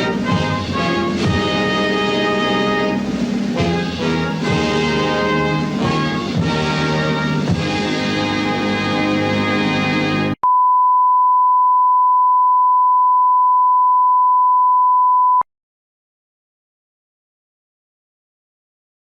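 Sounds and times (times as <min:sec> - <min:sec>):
music: 0:00.0 - 0:10.4
steady test tone beep: 0:10.4 - 0:15.5.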